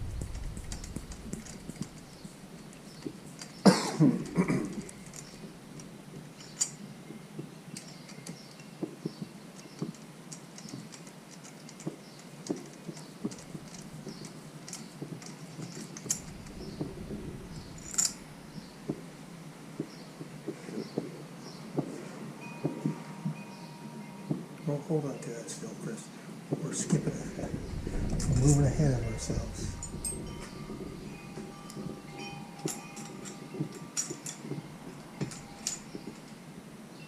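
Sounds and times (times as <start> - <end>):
metallic clatter: 0.0 - 3.6, 15.7 - 18.9, 27.3 - 36.4
metal parts clicking and tapping: 4.2 - 6.8, 7.8 - 18.7, 29.2 - 36.4.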